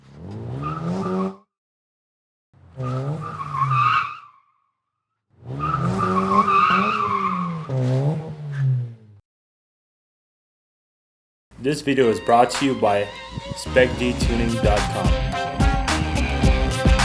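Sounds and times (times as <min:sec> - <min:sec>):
car engine revving: 0:00.0 - 0:01.4, 0:02.6 - 0:04.2, 0:05.4 - 0:09.2, 0:12.6 - 0:17.0
tires squealing: 0:00.0 - 0:01.4, 0:02.6 - 0:04.5, 0:05.4 - 0:09.1, 0:11.7 - 0:17.0.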